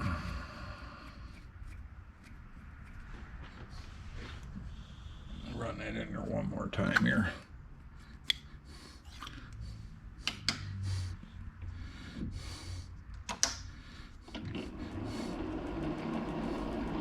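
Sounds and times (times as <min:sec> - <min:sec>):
sharp metallic clicks: 0:13.1 - 0:13.8
machine-tool motor running: 0:14.3 - 0:17.0.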